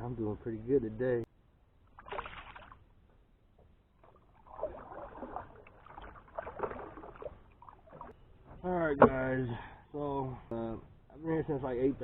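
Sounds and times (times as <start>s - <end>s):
water splashing: 1.9s - 2.8s, 4.0s - 8.2s.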